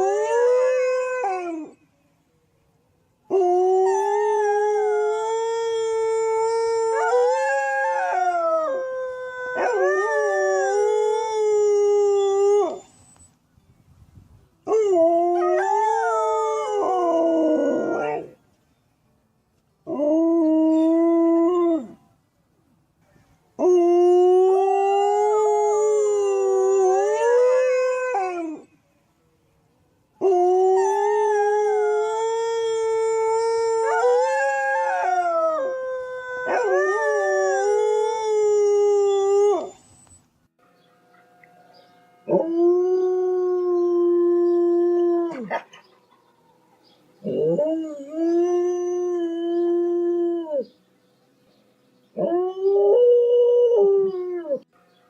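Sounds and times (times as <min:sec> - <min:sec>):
dogs howling: 0:03.3 - 0:12.9, 0:30.2 - 0:39.8, 0:42.2 - 0:50.7.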